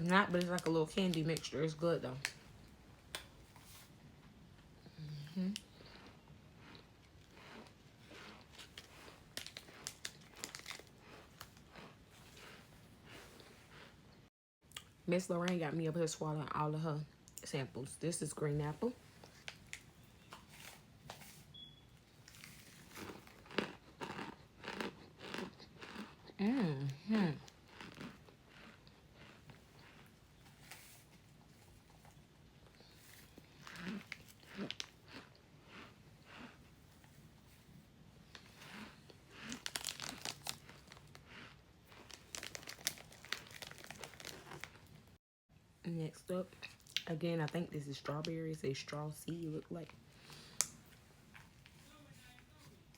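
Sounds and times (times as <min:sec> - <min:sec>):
crunchy food being chewed: 0:04.6 - 0:14.9, 0:21.6 - 0:45.2, 0:49.9 - 0:52.9
crinkling and handling noises: 0:07.1 - 0:14.0, 0:18.8 - 0:24.3, 0:29.2 - 0:35.1, 0:36.9 - 0:45.2, 0:49.7 - 0:52.9
plastic bag crinkling: 0:08.5 - 0:12.4, 0:39.4 - 0:45.1.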